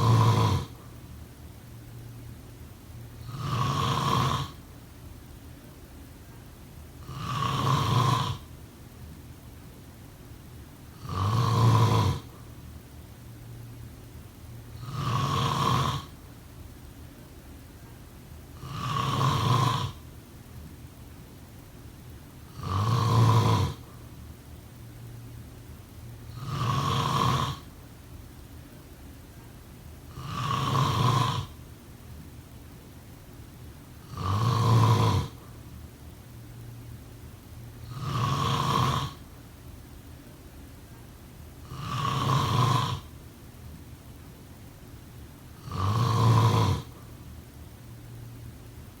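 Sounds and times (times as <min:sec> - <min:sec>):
person snoring: 0:00.0 - 0:00.9, 0:03.2 - 0:04.6, 0:07.0 - 0:08.5, 0:11.0 - 0:12.4, 0:14.8 - 0:16.2, 0:18.6 - 0:20.0, 0:22.5 - 0:24.0, 0:26.3 - 0:27.7, 0:30.1 - 0:31.6, 0:34.0 - 0:35.5, 0:37.8 - 0:39.2, 0:41.6 - 0:43.1, 0:45.6 - 0:47.1.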